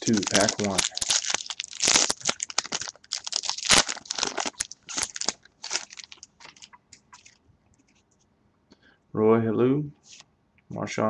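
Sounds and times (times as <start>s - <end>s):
wrapper crinkling and tearing: 0.0s - 7.4s.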